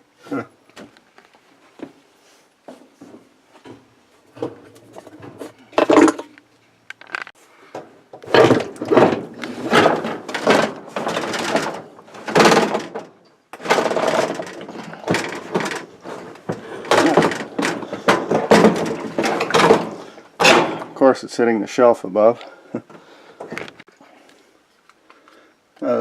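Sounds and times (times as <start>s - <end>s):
parts scraping and rattling: 2.7s - 21.5s.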